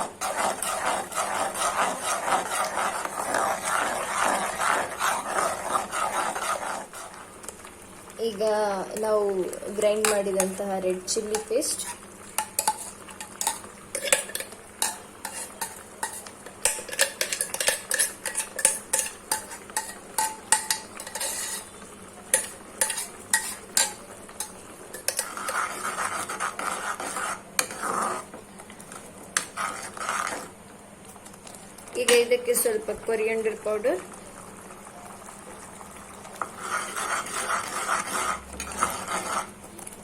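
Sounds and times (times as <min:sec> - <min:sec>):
spoon scraping bowl: 0:00.0 - 0:07.2, 0:11.3 - 0:21.7, 0:22.3 - 0:28.4, 0:29.4 - 0:30.5, 0:36.4 - 0:39.6.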